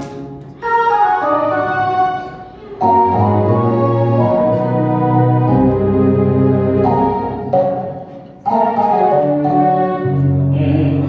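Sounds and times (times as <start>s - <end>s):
keyboard playing sustained chords: 0.0s - 11.0s.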